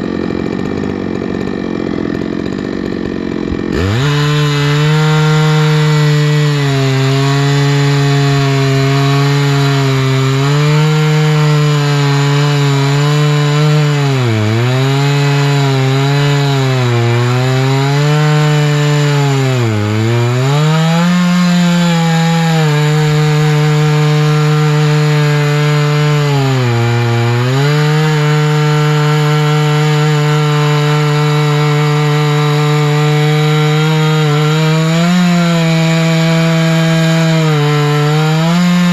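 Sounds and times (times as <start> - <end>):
chainsaw cutting log: 0.0 - 38.9.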